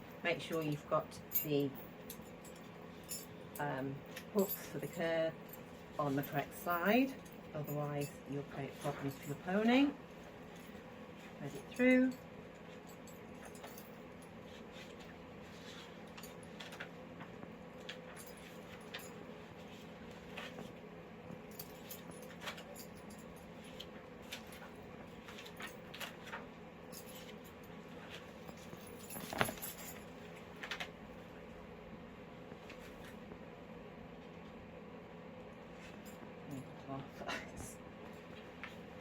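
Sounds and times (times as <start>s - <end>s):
bridle metal clinking: 0.0s - 10.8s, 25.3s - 30.4s
faint steady hum: 0.0s - 39.0s.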